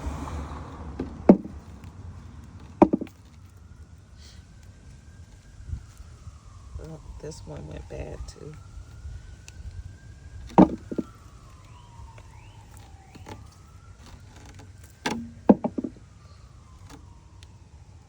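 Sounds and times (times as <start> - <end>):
faint siren wailing: 0.0 - 18.0
sharp knocks: 1.0 - 1.6, 2.8 - 3.1, 10.5 - 11.1, 15.0 - 16.0.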